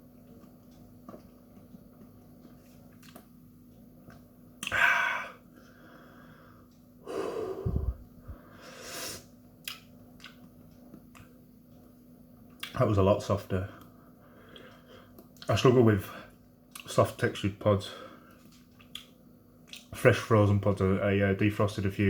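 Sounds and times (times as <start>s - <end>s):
wet mouth clicks from chewing: 2.9s - 3.3s, 9.6s - 11.3s, 18.7s - 19.9s
man exhaling and sniffing: 7.1s - 9.3s.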